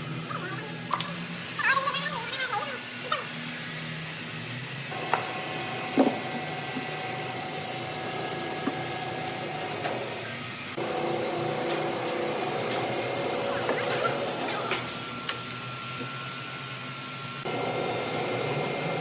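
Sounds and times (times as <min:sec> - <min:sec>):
woodworking machine whining: 0:04.6 - 0:19.0.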